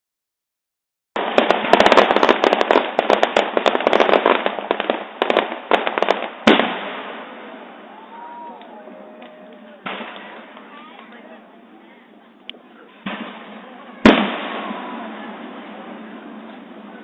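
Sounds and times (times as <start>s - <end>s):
loud firework bang: 1.2s - 7.3s, 9.8s - 10.6s, 13.0s - 17.0s
fireworks crackling: 1.2s - 17.0s.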